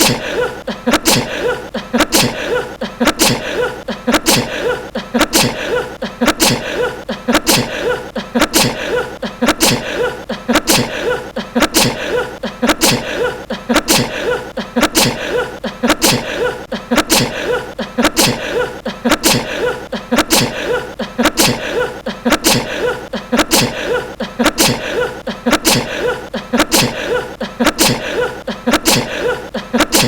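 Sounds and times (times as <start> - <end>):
laughter: 0.0 - 30.0
man sneezing: 0.0 - 30.0.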